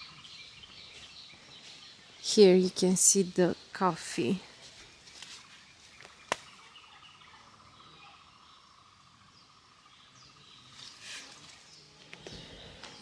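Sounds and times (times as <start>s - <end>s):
soft rustle: 0.6s - 2.9s, 4.4s - 6.7s, 10.7s - 13.0s.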